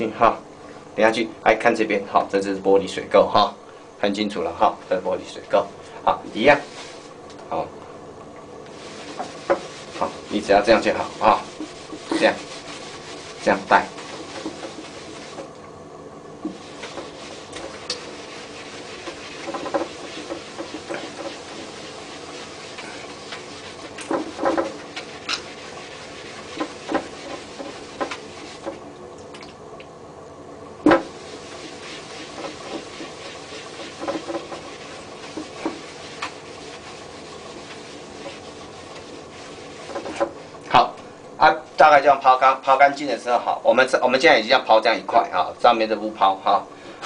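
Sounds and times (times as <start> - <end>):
steady background hum: 0.0 - 47.0
cloth rubbing on glass: 6.3 - 7.2, 8.7 - 15.5, 16.4 - 28.8, 30.9 - 40.5.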